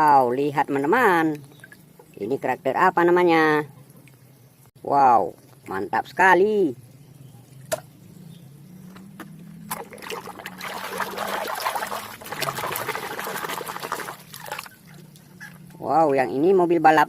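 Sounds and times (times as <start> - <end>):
water splashing and trickling: 0.0 - 16.8.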